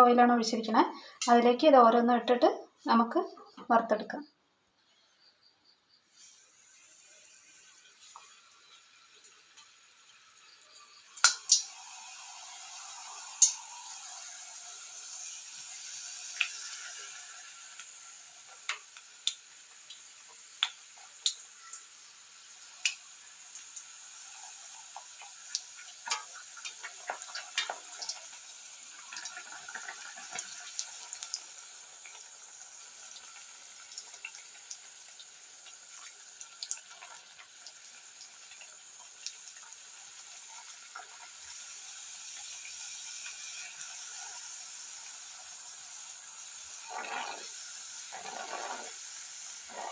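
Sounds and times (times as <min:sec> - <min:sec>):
dough deep-frying in oil: 0:02.8 - 0:49.9
oil popping and crackling: 0:07.8 - 0:49.9.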